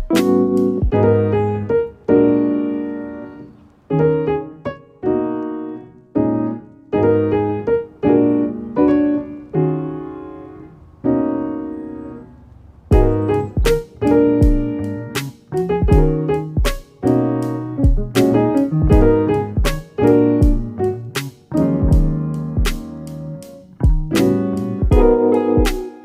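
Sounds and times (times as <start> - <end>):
soft piano chords: 0.0 - 26.0.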